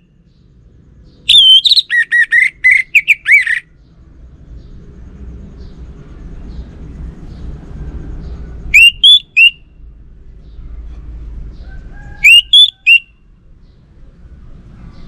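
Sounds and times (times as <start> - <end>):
low steady rumble: 0.0 - 12.2, 12.8 - 15.0
bird whistling song: 1.2 - 3.7, 8.7 - 9.7, 12.1 - 13.1.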